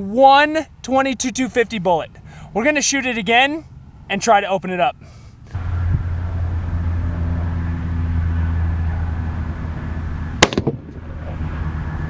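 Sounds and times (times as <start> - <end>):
low mechanical hum: 4.9 - 12.0
rifle shot: 10.4 - 11.0.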